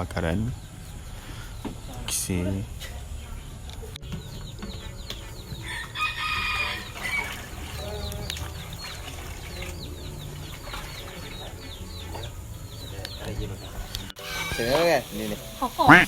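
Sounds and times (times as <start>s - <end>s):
rooster crowing: 5.6s - 7.8s.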